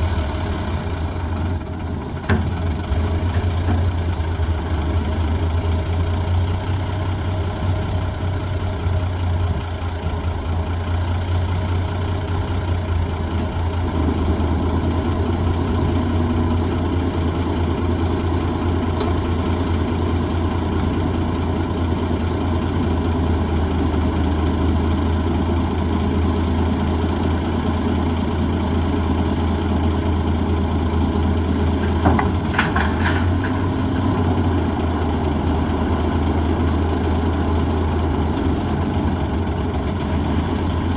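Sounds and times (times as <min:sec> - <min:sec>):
diesel engine idling: 0:00.0 - 0:40.9.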